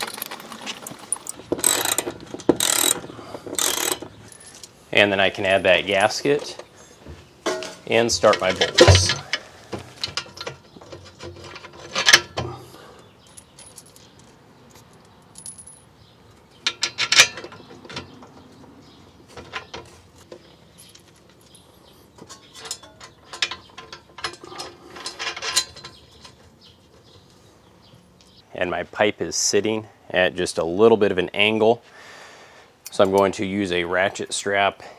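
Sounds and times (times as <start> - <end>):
metal clinking: 0.0 - 3.0, 3.6 - 4.7, 7.5 - 9.4, 13.2 - 14.1, 14.9 - 15.9
hand ratchet clicking: 0.0 - 4.1.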